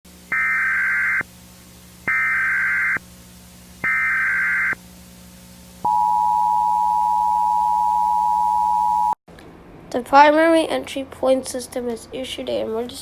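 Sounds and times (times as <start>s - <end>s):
two-tone alert signal: 0.3s - 1.2s, 2.1s - 3.0s, 3.8s - 4.8s
digital data bursts: 0.3s - 1.3s, 2.1s - 3.0s, 3.8s - 4.8s.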